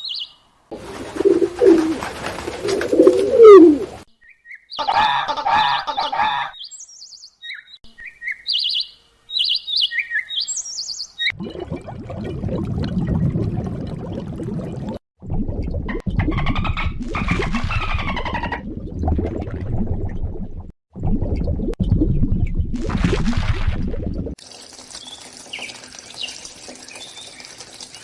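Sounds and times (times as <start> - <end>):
high bird chirps: 0.0 - 0.4, 4.2 - 11.4
wavering animal call: 3.2 - 3.9.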